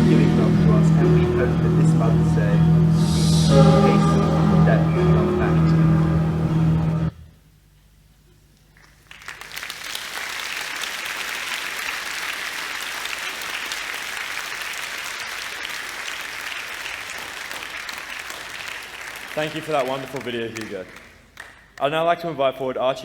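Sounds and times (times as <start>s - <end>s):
audience applauding: 8.8s - 21.8s.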